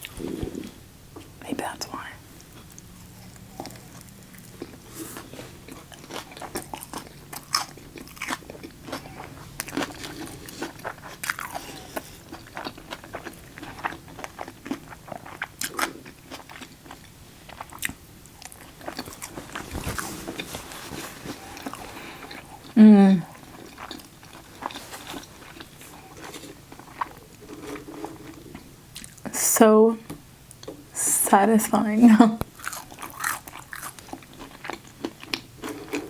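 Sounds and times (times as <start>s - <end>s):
person chewing crunchy food: 2.4s - 29.2s, 32.5s - 36.0s.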